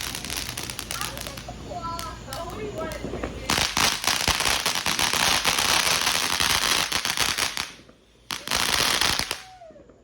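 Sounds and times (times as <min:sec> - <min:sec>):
firework crackling pops: 0:00.0 - 0:10.0.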